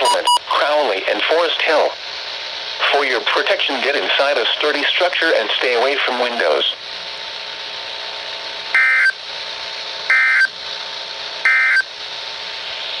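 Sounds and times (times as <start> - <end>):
buzzy two-tone digital data tones: 0.0 - 0.6, 8.8 - 9.2, 10.1 - 10.5, 11.5 - 11.8.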